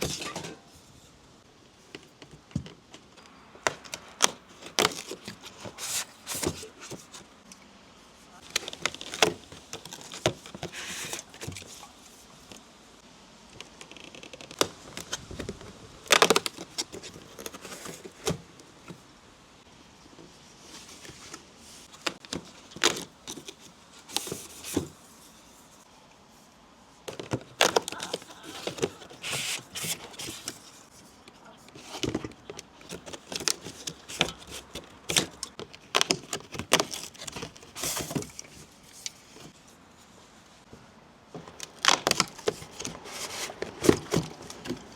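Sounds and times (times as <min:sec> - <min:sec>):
packaging rustling and clicking: 0:02.0 - 0:07.3, 0:08.4 - 0:12.6, 0:13.6 - 0:19.0, 0:20.9 - 0:25.0, 0:27.1 - 0:39.6, 0:41.4 - 0:44.9.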